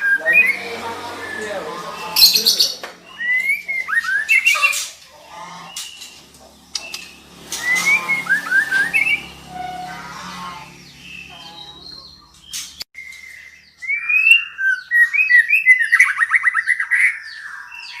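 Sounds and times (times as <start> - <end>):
bird whistling and trilling: 2.2 - 4.9, 6.8 - 9.7, 12.5 - 18.0.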